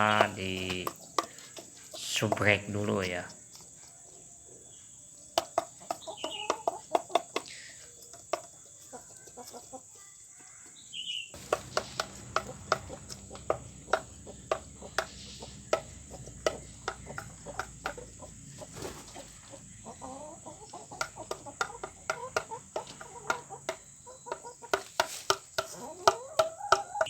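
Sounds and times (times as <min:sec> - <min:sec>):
chickens clucking: 0:00.0 - 0:27.0
high chirps: 0:11.0 - 0:24.6.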